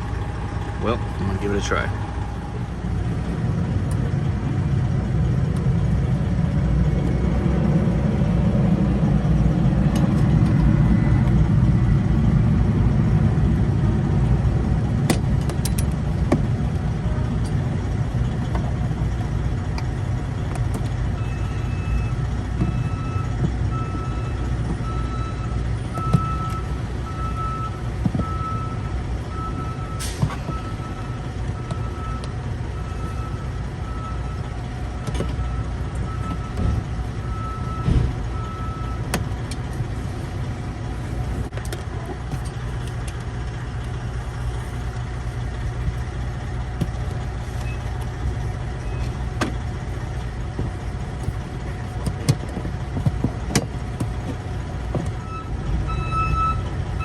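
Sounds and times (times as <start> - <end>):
truck engine idling: 0.0 - 57.0
reversing alarm beeping: 21.2 - 34.5, 35.2 - 39.1, 55.2 - 57.0.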